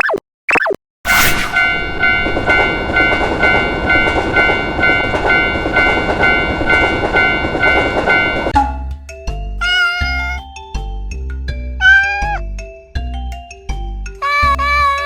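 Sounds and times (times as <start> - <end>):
passing train rumble: 1.1 - 8.7
level crossing alarm ringing: 1.5 - 8.6.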